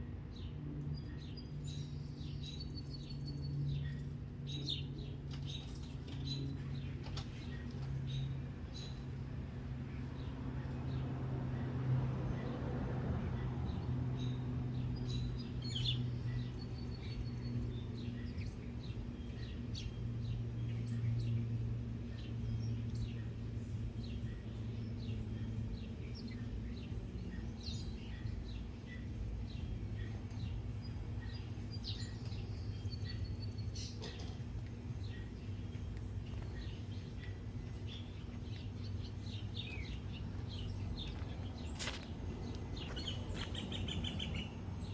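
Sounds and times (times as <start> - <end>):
small birds chirping: 13.3 - 44.9.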